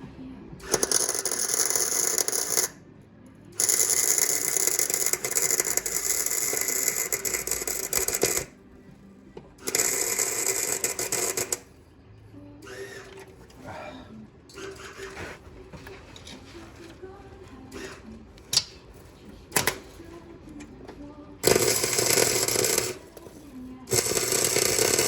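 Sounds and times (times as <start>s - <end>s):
power tool rattling: 3.6s - 8.5s, 9.6s - 11.6s, 21.4s - 23.2s, 23.9s - 25.0s.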